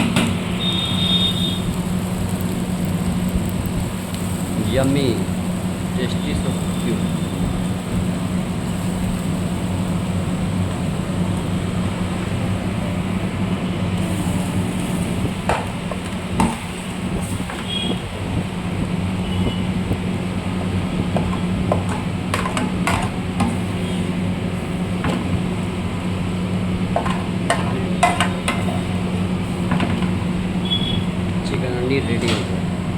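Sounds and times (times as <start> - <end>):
kitchen machinery hum: 0.0 - 32.9
utensils clinking and knocking: 27.0 - 28.9.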